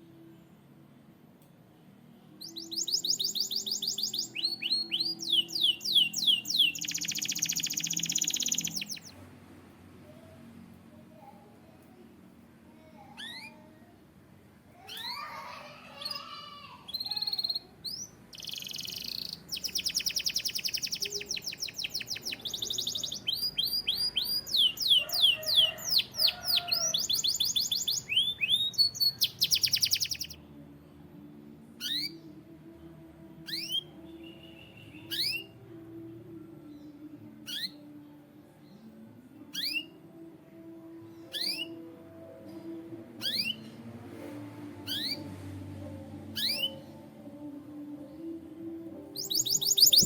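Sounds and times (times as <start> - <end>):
canary singing trills: 2.4 - 9.2, 12.8 - 13.8, 14.9 - 30.4, 31.7 - 32.4, 33.4 - 35.8, 36.6 - 38.1, 38.7 - 40.1, 41.0 - 42.3, 43.2 - 43.8, 44.8 - 45.4, 46.3 - 47.0, 49.0 - 50.0.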